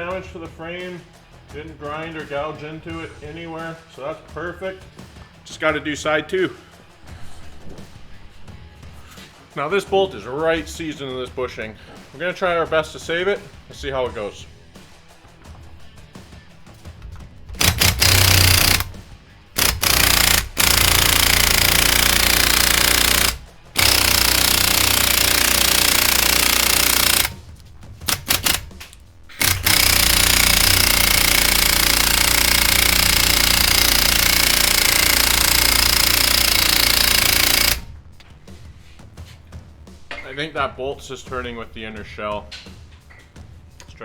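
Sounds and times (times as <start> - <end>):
impact wrench hammering: 16.8 - 38.0.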